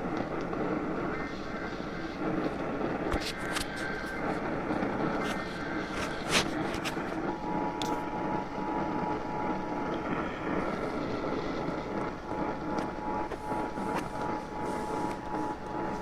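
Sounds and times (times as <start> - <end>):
radio static hiss: 10.1 - 16.0.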